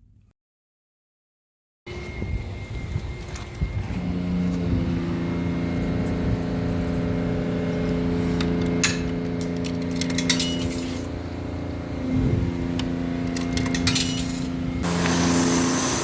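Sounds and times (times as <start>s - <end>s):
car engine running: 3.8s - 16.0s
keys jingling: 5.3s - 11.4s, 13.0s - 14.8s.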